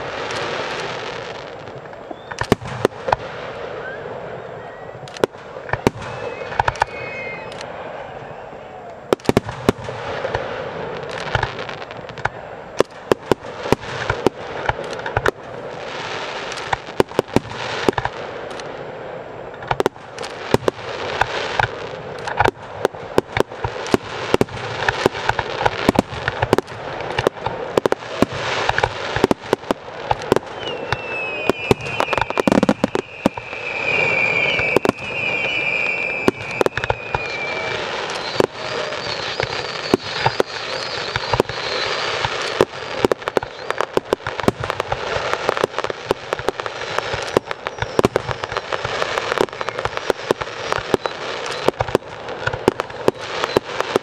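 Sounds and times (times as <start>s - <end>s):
firework bursts and bangs: 0.0s - 54.0s
firework crackling: 0.0s - 54.0s
high wavering whistle: 2.0s - 2.5s, 3.7s - 5.0s, 5.8s - 8.8s, 30.5s - 42.5s, 43.3s - 44.0s, 47.2s - 51.8s.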